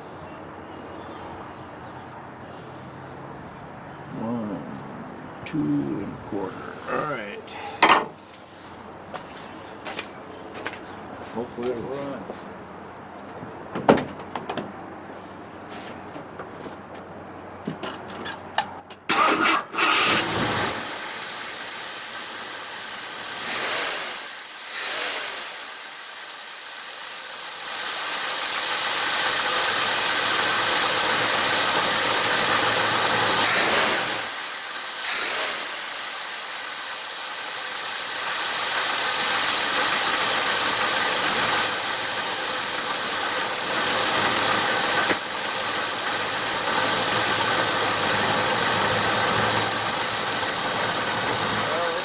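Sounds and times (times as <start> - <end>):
car engine idling: 19.1 - 52.0.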